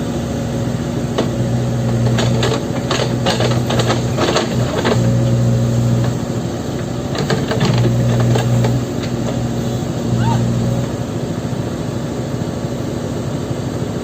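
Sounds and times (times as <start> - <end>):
diesel engine running: 0.0 - 14.0
metallic knocks and clatter: 1.2 - 5.1, 7.1 - 9.4.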